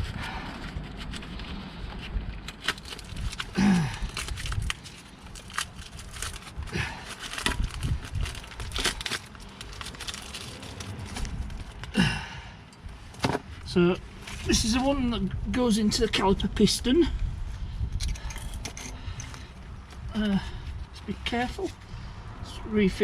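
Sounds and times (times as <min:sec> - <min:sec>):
wire and clips clicking and crinkling: 0:00.7 - 0:12.0, 0:18.0 - 0:20.2.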